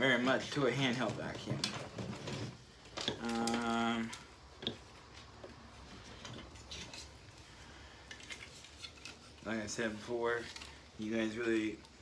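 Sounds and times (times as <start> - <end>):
plastic parts clicking: 2.8 - 4.8.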